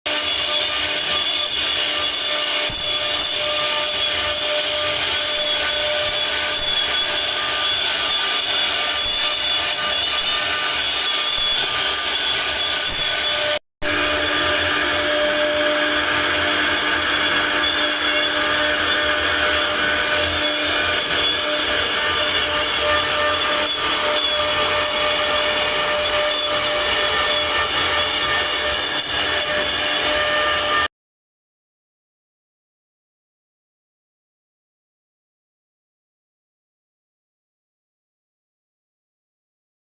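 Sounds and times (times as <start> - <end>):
rasping wood cutting: 0.1 - 30.9
router spindle whine: 0.1 - 30.9.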